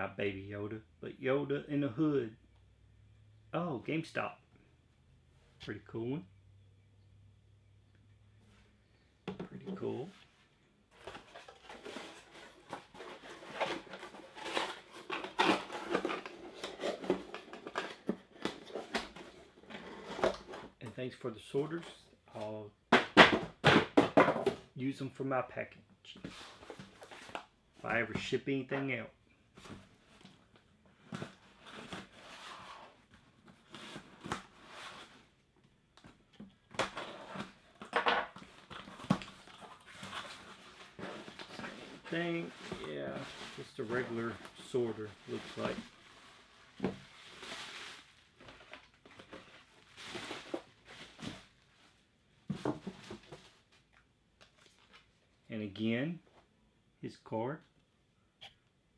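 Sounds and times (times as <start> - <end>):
plastic packaging crinkling: 11.0 - 20.4, 38.4 - 51.6.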